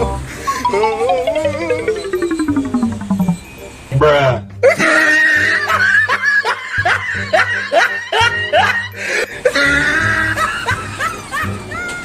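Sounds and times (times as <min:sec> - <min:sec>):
music with steady bass line: 0:00.0 - 0:04.6
rising laugh-like cries: 0:00.3 - 0:02.6, 0:04.6 - 0:12.0.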